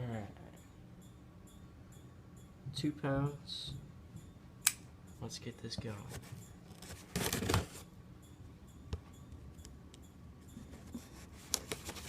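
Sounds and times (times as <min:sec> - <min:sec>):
package rustling and scraping: 0:06.1 - 0:07.9, 0:10.9 - 0:12.0.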